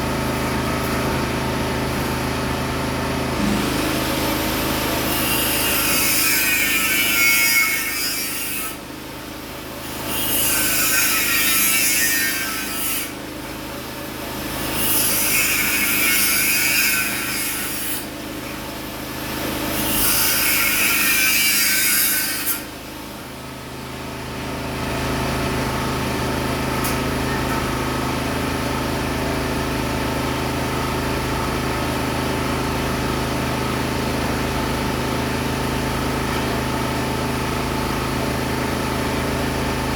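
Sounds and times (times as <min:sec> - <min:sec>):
steady motor hum: 0:00.0 - 0:11.6, 0:12.3 - 0:21.5, 0:22.3 - 0:39.9
power tool cutting: 0:03.4 - 0:08.8, 0:09.8 - 0:13.2, 0:14.4 - 0:18.2, 0:19.0 - 0:22.7.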